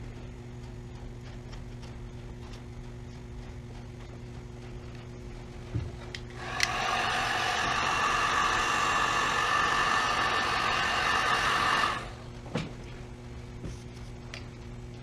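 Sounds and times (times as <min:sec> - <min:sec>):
heat gun whine and air rush: 0:06.3 - 0:12.3
heat gun switch click: 0:06.5 - 0:06.8.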